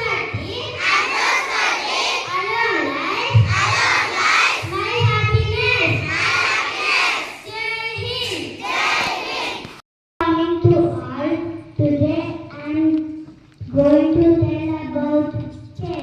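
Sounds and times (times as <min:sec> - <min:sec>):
children chanting in unison: 0:00.0 - 0:09.8.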